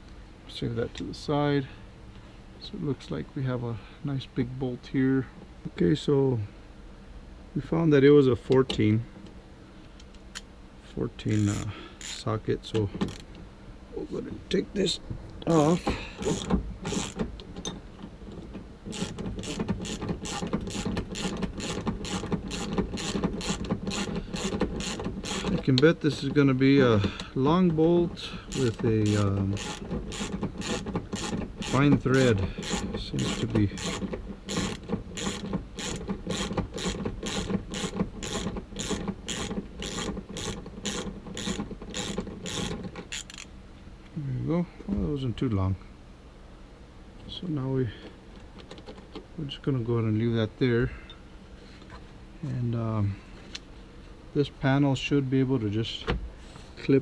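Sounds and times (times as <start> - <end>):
socket ratchet clicking: 16.2 - 17.8, 18.9 - 25.6, 28.5 - 43.5.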